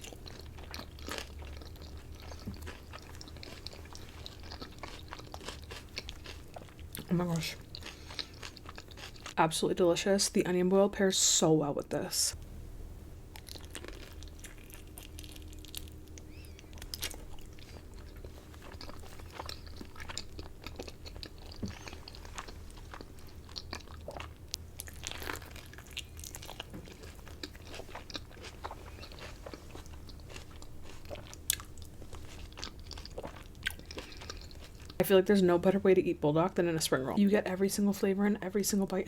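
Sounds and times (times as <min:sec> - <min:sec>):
person chewing crispy food: 0:00.0 - 0:09.4, 0:13.3 - 0:35.0
wet chewing sounds: 0:00.0 - 0:09.4, 0:13.3 - 0:35.0
steady low hum: 0:00.0 - 0:39.0.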